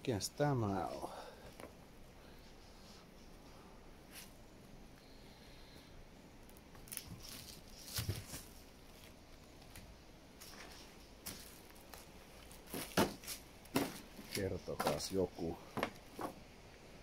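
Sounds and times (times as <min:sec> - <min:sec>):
footsteps crunching over debris: 0:06.8 - 0:16.4.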